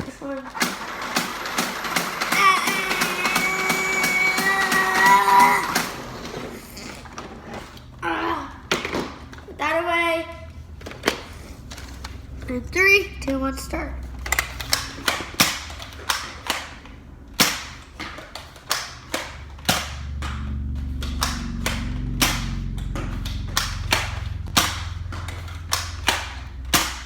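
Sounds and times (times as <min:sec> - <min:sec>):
toy blaster firing darts: 0:00.5 - 0:06.8, 0:14.2 - 0:27.0
low steady hum: 0:02.3 - 0:27.0.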